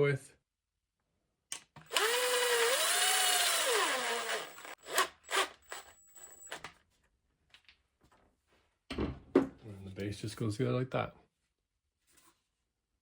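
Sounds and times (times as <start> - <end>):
cordless drill motor whining: 1.9 - 5.9.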